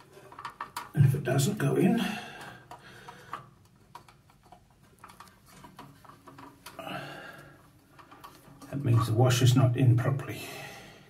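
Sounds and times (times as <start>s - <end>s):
faint plastic clicks and taps: 2.3s - 9.0s.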